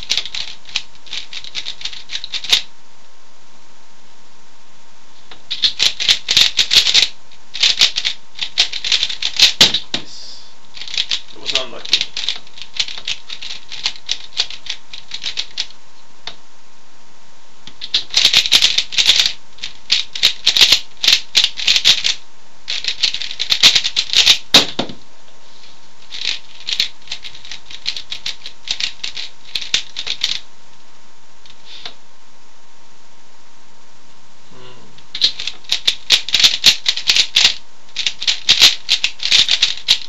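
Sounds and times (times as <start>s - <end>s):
plastic puzzle cube clicking: 35.2s - 40.0s.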